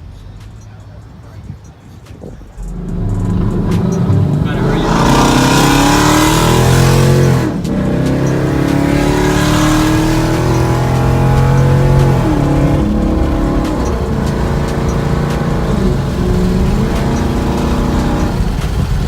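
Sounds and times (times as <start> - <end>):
car engine accelerating: 2.2 - 19.0.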